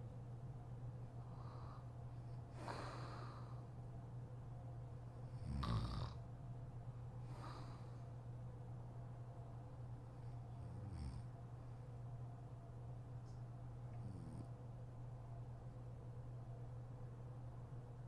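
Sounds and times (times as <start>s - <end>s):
steady low hum: 0.0s - 18.0s
woman snoring: 5.4s - 6.2s.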